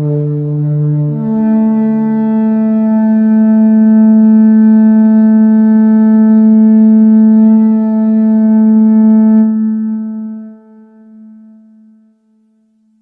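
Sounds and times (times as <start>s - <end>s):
war horn long note: 0.0s - 11.3s.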